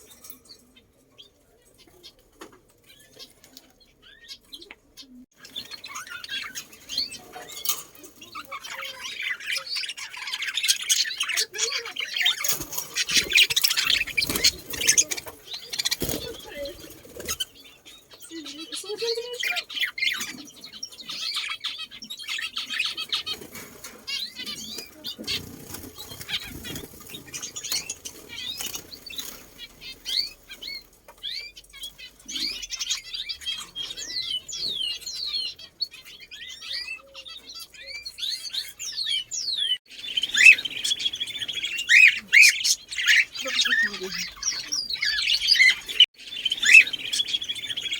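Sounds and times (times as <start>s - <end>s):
small birds chirping: 0.0s - 47.9s
wing flutters: 12.3s - 17.6s.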